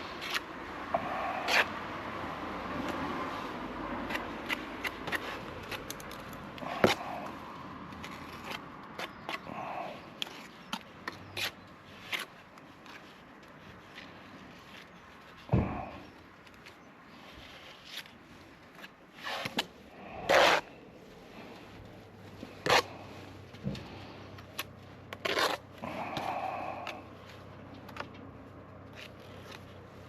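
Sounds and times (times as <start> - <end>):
plastering tools scraping: 17.1 - 20.8, 25.1 - 27.0.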